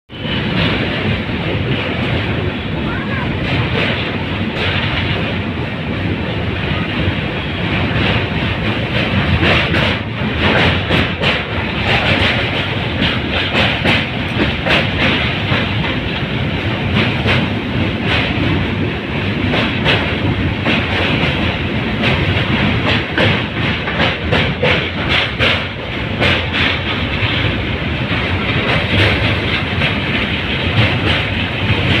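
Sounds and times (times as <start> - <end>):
train rumbling: 0.1 - 32.0
wheels clacking over rail joints: 0.1 - 32.0.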